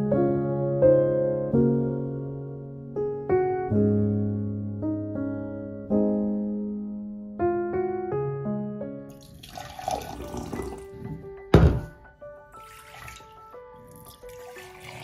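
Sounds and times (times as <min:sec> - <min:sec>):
piano music: 0:00.0 - 0:15.0
running water: 0:09.1 - 0:11.2, 0:12.5 - 0:15.0
loud thump: 0:11.5 - 0:12.0.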